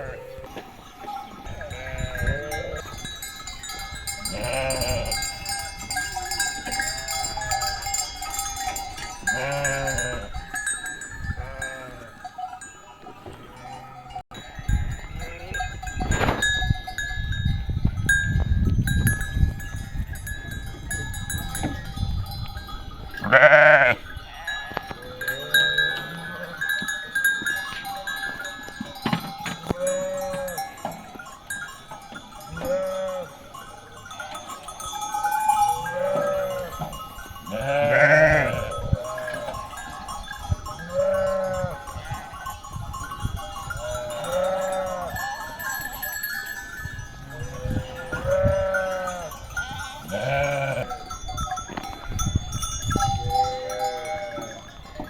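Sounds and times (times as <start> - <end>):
sheep bleating: 0.0 - 0.6, 1.6 - 2.9, 4.2 - 5.3, 9.2 - 10.3, 11.4 - 12.2, 23.2 - 26.6, 32.5 - 33.3, 37.5 - 39.6, 50.0 - 50.9
animal bells ringing: 0.0 - 55.0.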